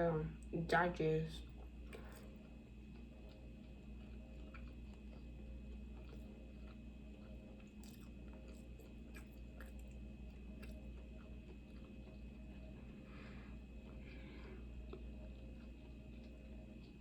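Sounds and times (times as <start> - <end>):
steady low hum: 0.0 - 17.0
chewing food: 1.4 - 17.0.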